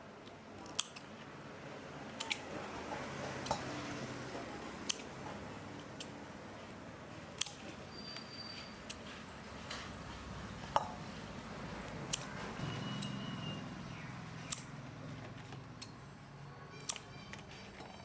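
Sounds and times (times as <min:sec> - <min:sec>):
sharp clicks: 0:14.4 - 0:14.7.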